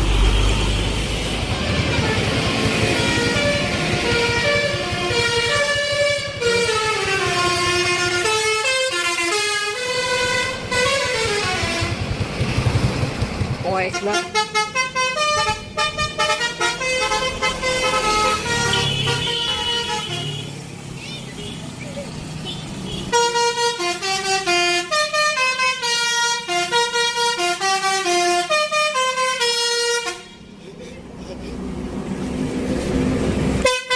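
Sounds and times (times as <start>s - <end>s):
bus musical horn playing tune: 0.2s - 12.2s, 13.9s - 20.5s, 22.8s - 30.6s, 33.5s - 33.9s.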